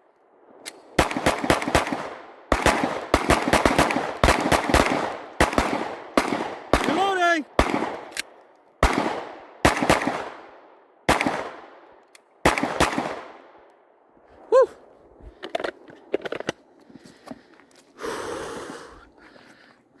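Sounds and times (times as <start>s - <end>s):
gunshots with long echo: 0.4s - 14.0s.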